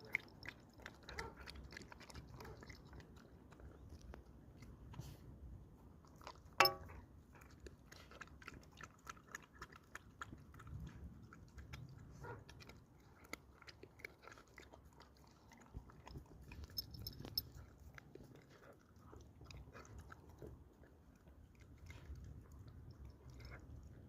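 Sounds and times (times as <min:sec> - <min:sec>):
puppy chewing food: 0:00.0 - 0:24.0
sharp clink: 0:06.6 - 0:06.9.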